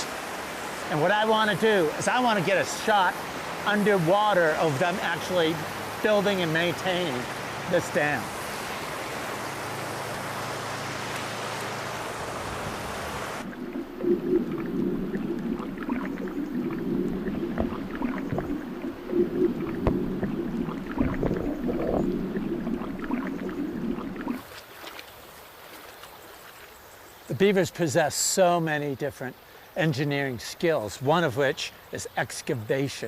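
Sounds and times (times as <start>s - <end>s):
water rushing over a dam: 0.0s - 24.4s
muffled underwater gurgling: 13.2s - 24.4s
underwater knocks and clicks: 13.4s - 24.4s.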